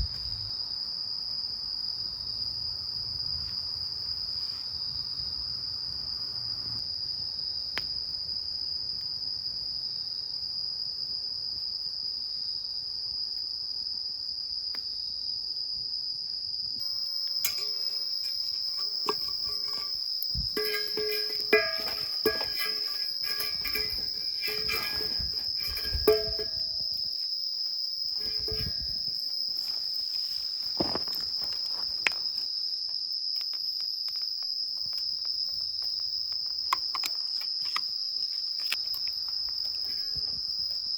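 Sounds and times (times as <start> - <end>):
crickets chirring: 0.0 - 40.9
knocks and ringing clinks: 16.8 - 27.2, 28.2 - 29.7.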